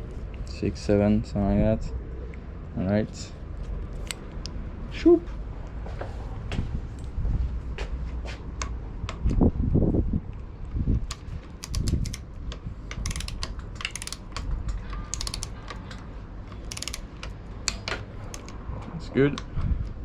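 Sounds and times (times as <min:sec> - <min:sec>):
ratchet wrench clicking: 0:04.0 - 0:04.5, 0:11.1 - 0:12.3, 0:12.9 - 0:18.6.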